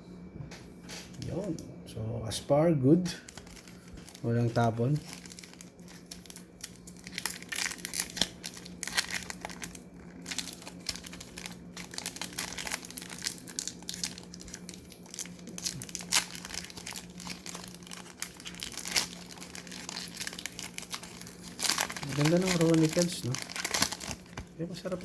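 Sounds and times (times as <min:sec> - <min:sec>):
plastic wrapper crinkling and tearing: 0:03.1 - 0:25.0.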